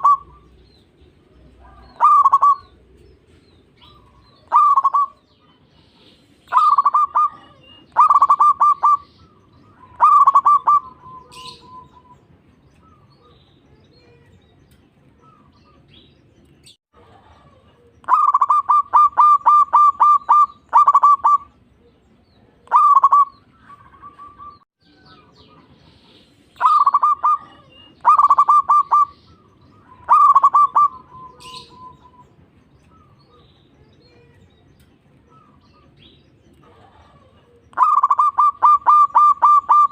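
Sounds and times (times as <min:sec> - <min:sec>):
dove cooing: 0:00.0 - 0:00.6, 0:01.5 - 0:05.6, 0:06.4 - 0:12.2, 0:17.0 - 0:24.6, 0:25.4 - 0:32.3, 0:36.6 - 0:39.9.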